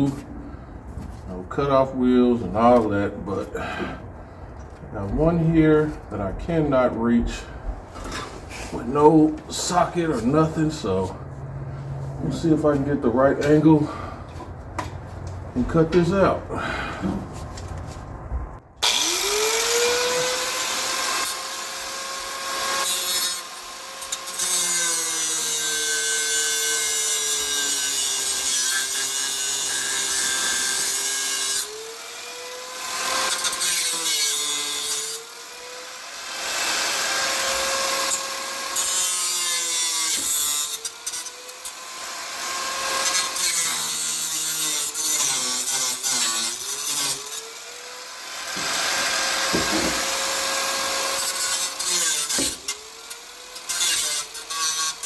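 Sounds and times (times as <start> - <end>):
cut-off wheel cutting metal: 18.8 - 55.0.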